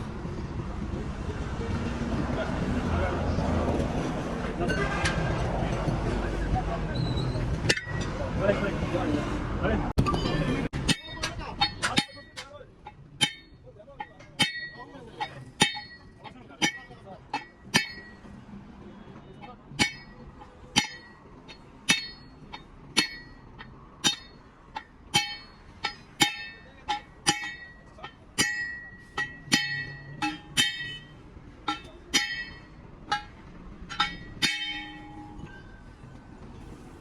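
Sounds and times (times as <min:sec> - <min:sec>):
hammer striking steel: 0:07.5 - 0:08.2, 0:10.0 - 0:18.4, 0:19.4 - 0:36.8.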